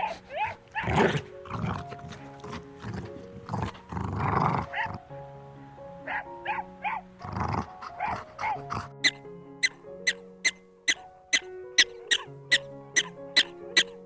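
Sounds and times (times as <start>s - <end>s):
dog barking: 0.0s - 5.0s, 6.1s - 9.2s
background music with held notes: 0.0s - 14.0s.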